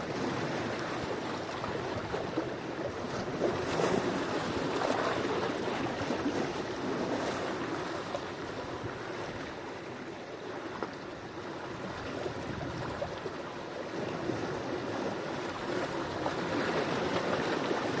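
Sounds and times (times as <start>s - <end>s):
sea waves washing onto shore: 0.0s - 18.0s.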